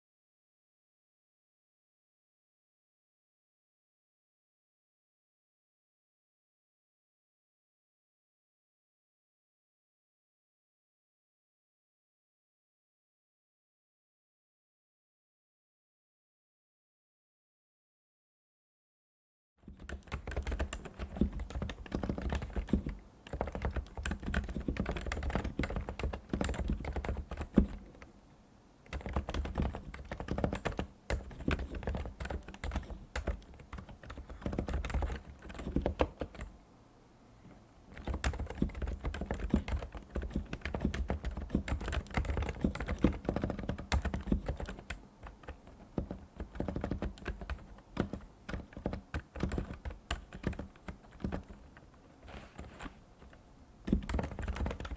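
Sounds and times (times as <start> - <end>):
keyboard typing: 19.7 - 28.1, 28.8 - 36.5, 37.9 - 54.9.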